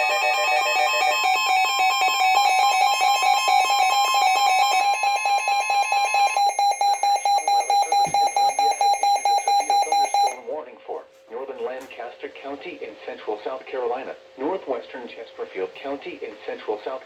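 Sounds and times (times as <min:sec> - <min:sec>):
pulsing two-tone radio alarm: 0:00.0 - 0:10.5.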